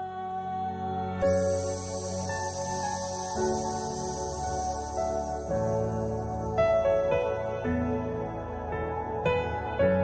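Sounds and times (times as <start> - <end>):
calm ambient music chords: 0.0 - 10.0
bright hissing wash: 1.1 - 7.8.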